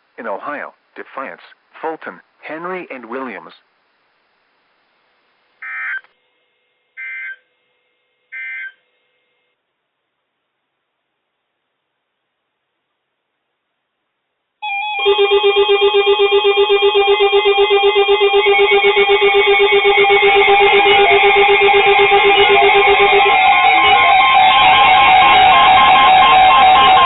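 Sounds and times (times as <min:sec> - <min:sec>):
weather radio alarms beeping and warbling: 0:14.7 - 0:27.0
low pulsing beep: 0:15.9 - 0:27.0.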